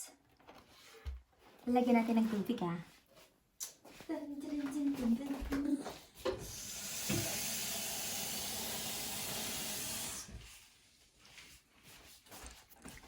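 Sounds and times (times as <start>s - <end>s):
water running into plastic tank: 6.2s - 10.6s.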